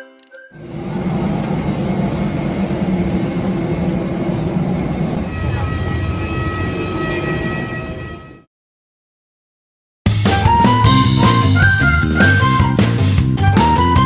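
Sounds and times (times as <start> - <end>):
engine rumbling: 0.6 - 8.1.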